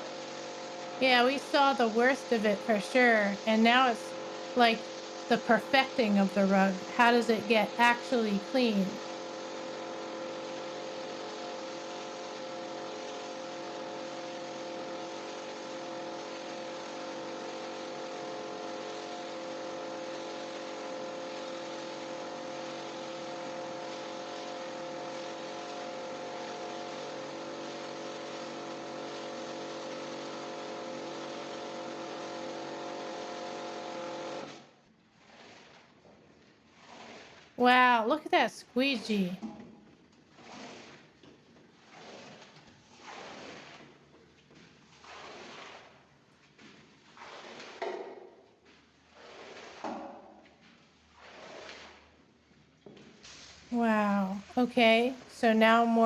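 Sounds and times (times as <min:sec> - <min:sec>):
pressure washer motor hum: 0:00.0 - 0:34.7, 0:53.8 - 0:56.0
water spray hissing on rug: 0:41.8 - 0:44.0, 0:44.9 - 0:46.1, 0:46.7 - 0:47.8, 0:49.0 - 0:49.9, 0:51.1 - 0:52.1.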